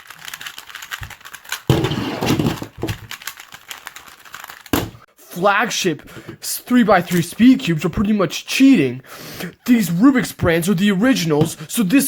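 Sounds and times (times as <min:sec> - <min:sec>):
plastic puzzle cubes clicking: 0:00.0 - 0:01.7, 0:02.4 - 0:05.0.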